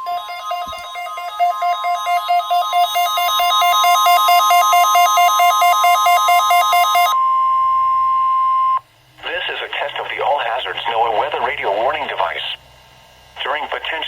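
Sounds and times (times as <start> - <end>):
steady high alarm tone: 0.0 - 8.8
two-pitch warbling alarm: 0.0 - 8.8.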